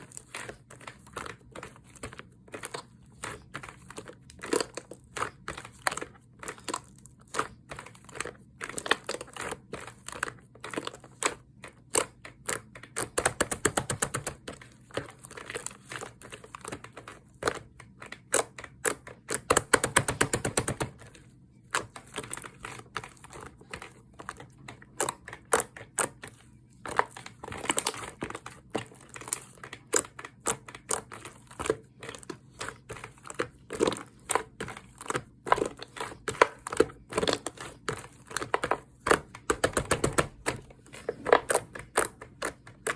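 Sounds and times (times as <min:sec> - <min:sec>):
slime squishing: 0:00.0 - 0:42.9
sticky clicks and pops: 0:11.9 - 0:14.4, 0:18.2 - 0:21.0, 0:34.6 - 0:42.9.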